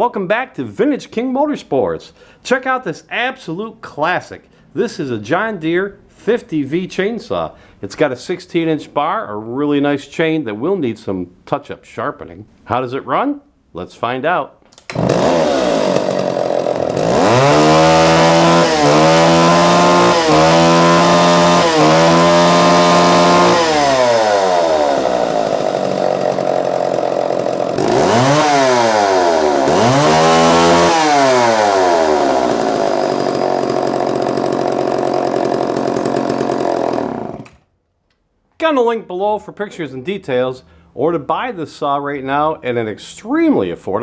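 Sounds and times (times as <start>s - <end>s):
chainsaw revving and idling: 14.9s - 37.6s.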